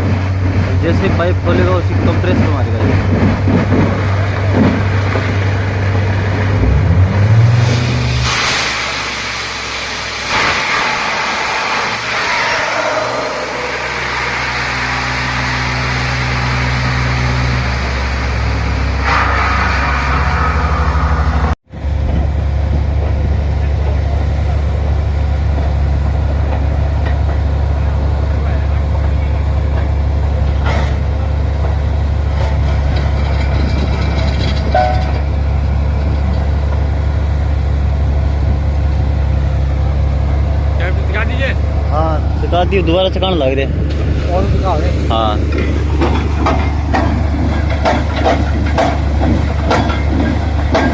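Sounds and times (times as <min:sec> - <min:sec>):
diesel engine droning: 0:00.0 - 0:50.9
compressed air hissing: 0:07.7 - 0:16.2.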